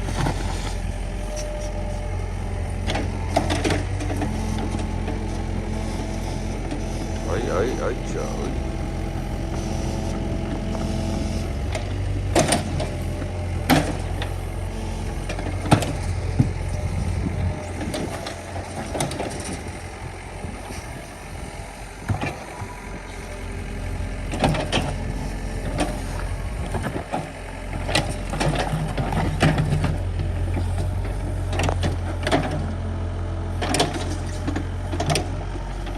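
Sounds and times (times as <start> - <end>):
truck engine running: 0.0 - 35.9.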